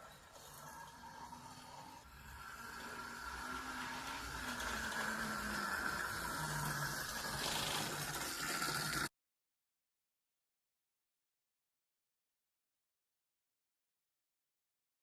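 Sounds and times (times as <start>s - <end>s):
electric motor whining: 0.0s - 8.2s.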